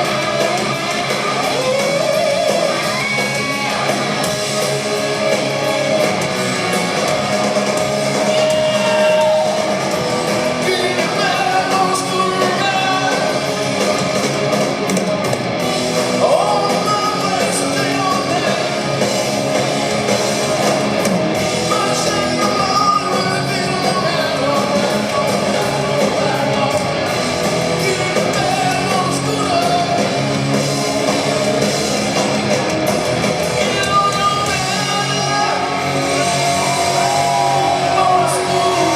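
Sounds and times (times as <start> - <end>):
live hard rock band: 0.0 - 38.9
person singing: 10.6 - 13.5, 16.2 - 18.8, 21.7 - 27.1, 27.8 - 30.2, 33.6 - 38.9.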